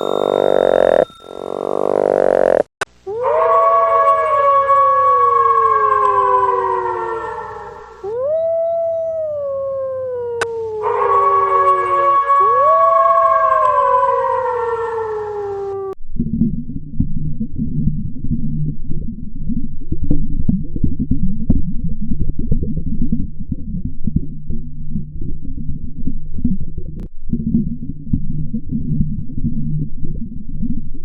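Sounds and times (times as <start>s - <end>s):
dog howling: 3.1s - 16.0s.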